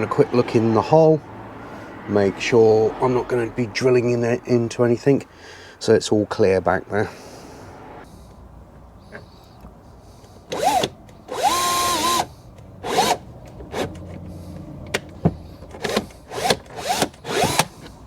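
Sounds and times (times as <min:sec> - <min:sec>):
power drill boring: 0:10.5 - 0:13.9, 0:15.8 - 0:17.8.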